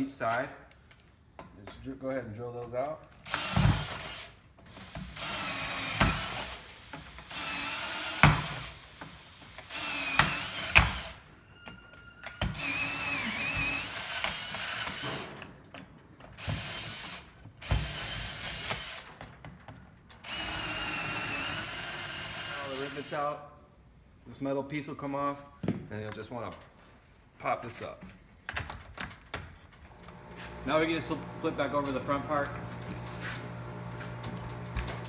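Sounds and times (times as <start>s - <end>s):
power drill drilling rivets: 3.0s - 23.4s, 28.4s - 35.0s.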